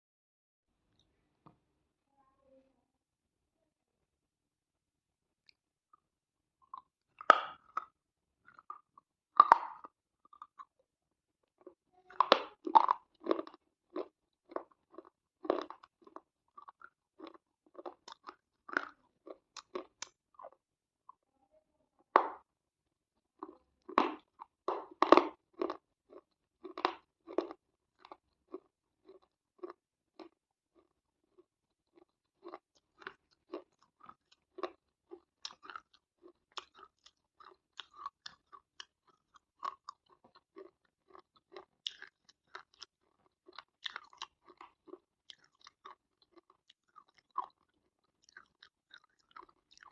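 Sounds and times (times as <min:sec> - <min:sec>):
crunchy chewing: 0:11.5 - 0:20.6, 0:23.4 - 0:49.9.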